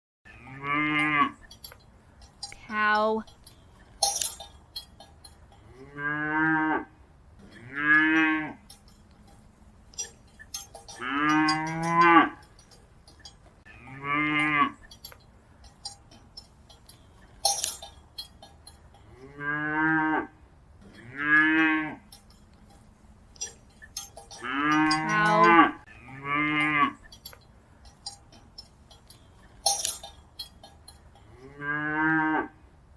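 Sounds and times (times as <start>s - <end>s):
cattle mooing: 0.3s - 1.4s, 5.7s - 6.9s, 7.5s - 8.8s, 10.6s - 12.5s, 13.7s - 14.8s, 24.2s - 27.1s, 31.3s - 32.6s
light clinks: 0.9s - 5.9s, 7.4s - 13.7s, 14.3s - 19.3s, 22.0s - 31.5s.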